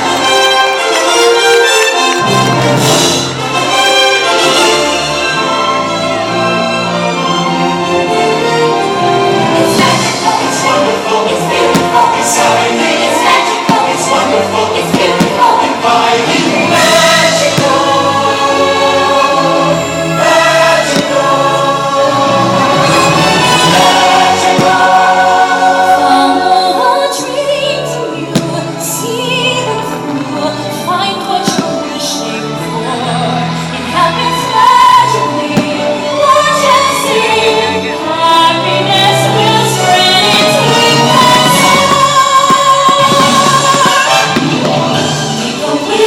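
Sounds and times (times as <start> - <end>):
choir singing held chords: 0.0 - 46.0
orchestral music: 0.0 - 46.0.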